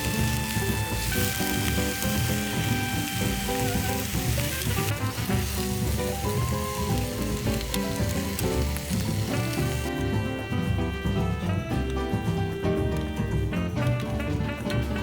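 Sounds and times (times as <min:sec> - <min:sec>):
meat sizzling on a hot pan: 0:00.0 - 0:10.0
background music: 0:00.0 - 0:15.0.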